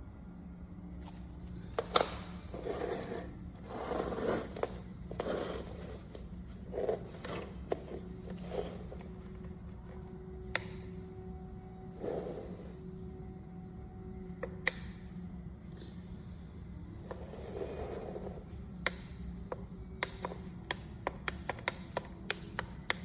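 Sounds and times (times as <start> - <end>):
low steady hum: 0.0 - 23.0
scraping and rustling handling noise: 1.0 - 10.1.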